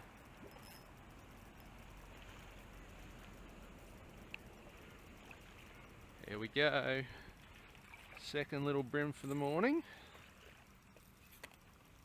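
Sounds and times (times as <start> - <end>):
faint outdoor background hiss: 0.0 - 12.0
small tick: 4.2 - 4.5, 10.6 - 12.0.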